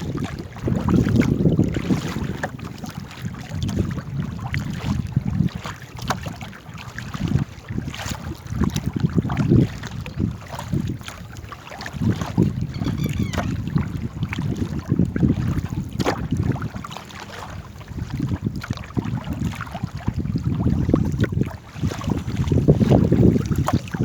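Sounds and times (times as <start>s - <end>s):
water sounds: 0.0s - 24.0s
wind buffeting microphone: 0.0s - 24.0s
boat knocks: 11.9s - 14.0s.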